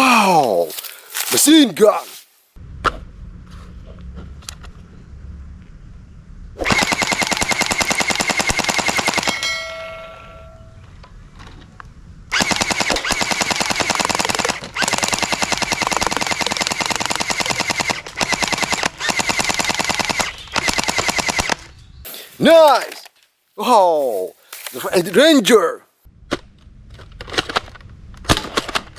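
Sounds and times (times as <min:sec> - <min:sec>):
toy machine gun firing: 0:06.6 - 0:09.4, 0:12.3 - 0:21.7.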